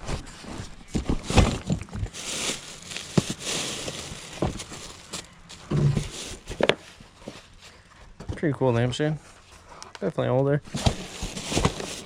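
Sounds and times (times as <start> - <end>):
rummaging through boxes: 0.0 - 8.2, 10.7 - 12.0.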